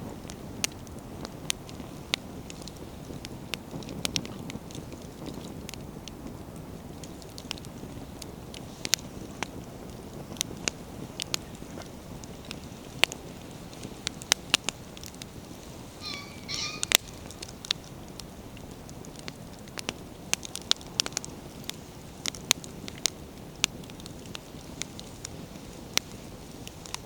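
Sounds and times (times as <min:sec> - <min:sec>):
bonfire crackling and popping: 0:00.0 - 0:27.0
high two-note squeak: 0:16.0 - 0:17.5.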